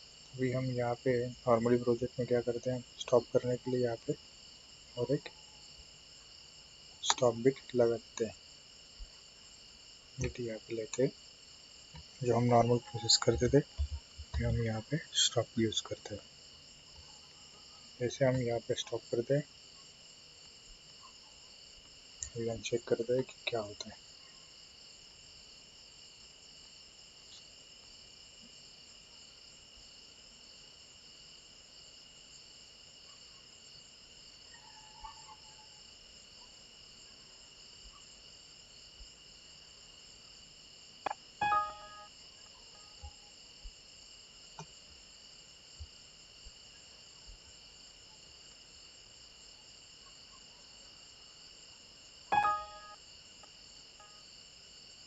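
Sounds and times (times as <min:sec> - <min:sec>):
crickets chirring: 0:00.0 - 0:55.0
short pitched blips: 0:41.4 - 0:42.1, 0:52.3 - 0:53.0.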